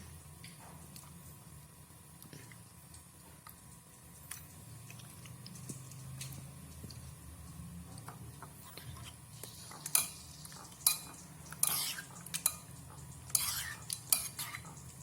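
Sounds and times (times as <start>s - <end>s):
soft stirring in a bowl: 0.0s - 15.0s
scraping bowl: 8.4s - 15.0s
utensil clinking against bowl: 9.7s - 15.0s.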